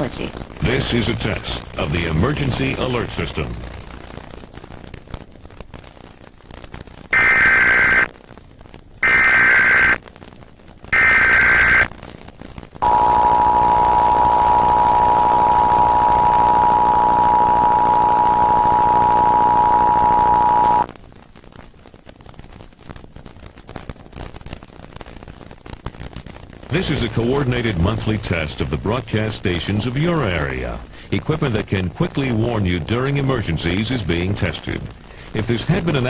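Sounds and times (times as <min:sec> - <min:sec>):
digital data tone bursts: 0:07.2 - 0:08.1, 0:09.0 - 0:10.0, 0:11.0 - 0:11.9, 0:12.8 - 0:20.9
two-tone attention signal: 0:12.8 - 0:20.9.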